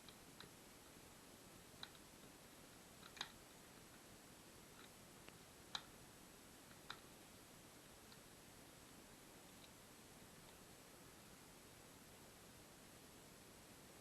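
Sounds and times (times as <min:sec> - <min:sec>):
faint hiss: 0:00.0 - 0:14.0
faint sharp clicks: 0:01.8 - 0:02.1, 0:04.8 - 0:06.0.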